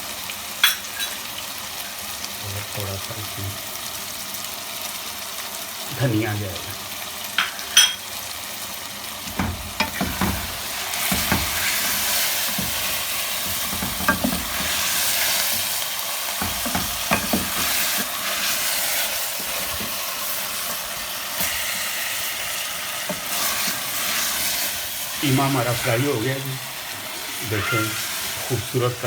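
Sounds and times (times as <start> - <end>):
meat sizzling in oil: 0.0 - 29.0
spoon scraping and knocking pot: 9.3 - 11.6, 12.5 - 14.8, 16.4 - 17.8.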